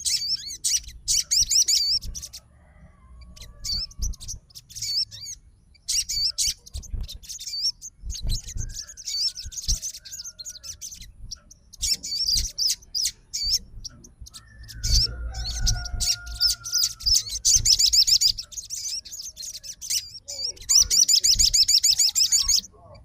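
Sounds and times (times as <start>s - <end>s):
bird whistle: 0.0s - 2.4s, 11.8s - 13.6s
songbird chirping and trilling: 0.0s - 23.0s.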